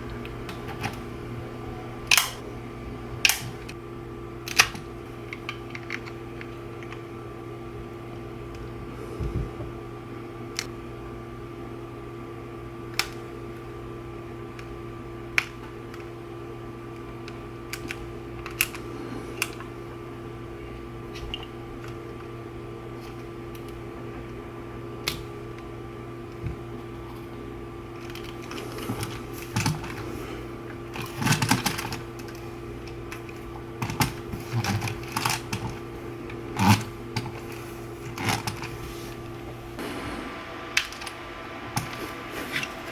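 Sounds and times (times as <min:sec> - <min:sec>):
low electrical hum: 0:00.0 - 0:42.9
plastic parts clicking together: 0:02.0 - 0:02.4, 0:03.2 - 0:03.8, 0:04.4 - 0:07.0, 0:17.0 - 0:18.8, 0:19.4 - 0:19.7, 0:30.9 - 0:38.8.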